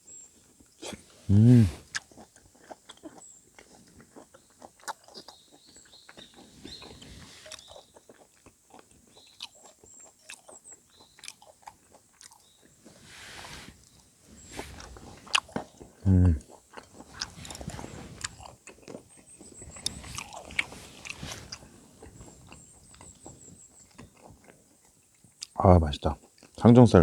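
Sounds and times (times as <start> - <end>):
person chewing wetly: 0.4 - 25.6, 26.2 - 26.6
faint bird chirps: 5.2 - 8.0, 12.4 - 16.3.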